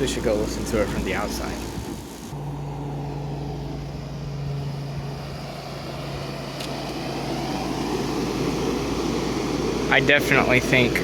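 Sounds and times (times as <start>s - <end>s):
compressor hum: 0.0s - 11.0s
fan air rushing: 0.0s - 11.0s.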